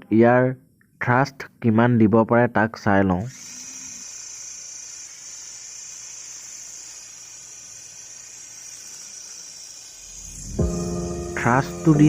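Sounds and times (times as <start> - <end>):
small motor propeller whirring: 3.3 - 10.6.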